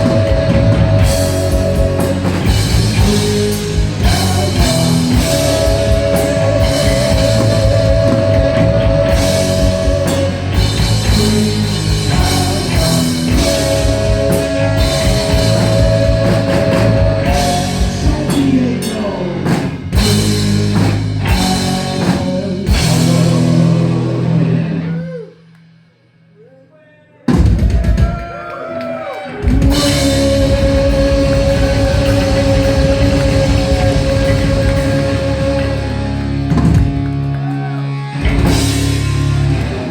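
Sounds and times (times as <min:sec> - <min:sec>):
distorted electric guitars: 0:00.0 - 0:25.2, 0:29.3 - 0:39.9
heavy metal band playing live: 0:00.0 - 0:25.4, 0:29.2 - 0:39.9
pounding drum kit: 0:00.0 - 0:26.1, 0:27.2 - 0:39.9.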